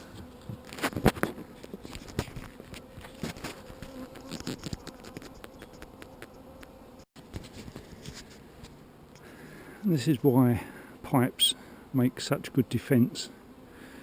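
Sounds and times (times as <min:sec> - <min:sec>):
honeybees buzzing: 0:00.0 - 0:14.0.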